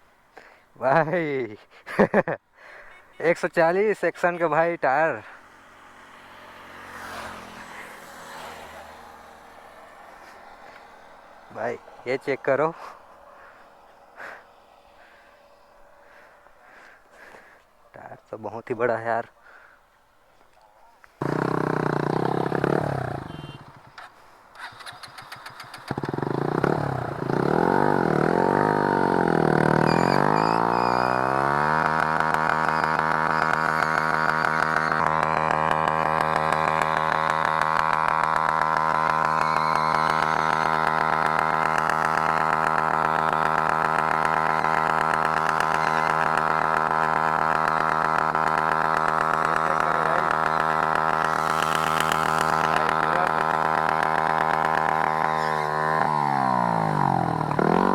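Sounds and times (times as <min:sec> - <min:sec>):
engine starting and running: 0:21.2 - 0:57.9.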